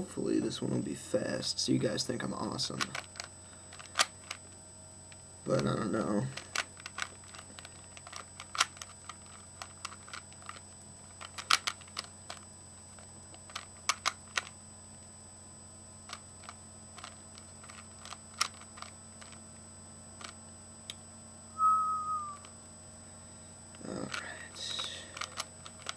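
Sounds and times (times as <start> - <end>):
puzzle cube plastic clicking: 2.7 - 4.4, 5.6 - 14.6, 16.0 - 19.4, 20.2 - 20.4, 23.8 - 25.9.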